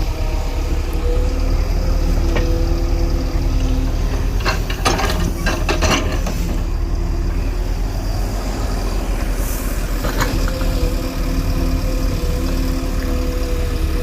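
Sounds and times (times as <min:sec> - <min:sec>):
heavy diesel engine running: 0:00.0 - 0:14.0
metallic clanks: 0:04.2 - 0:06.5.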